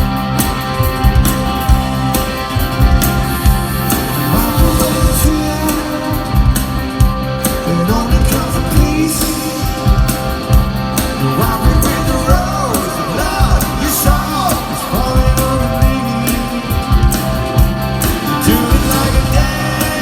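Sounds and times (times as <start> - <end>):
electric guitars: 0.0 - 20.0
live rock band playing: 0.0 - 20.0
person singing: 4.2 - 6.6, 7.5 - 10.0, 11.1 - 20.0.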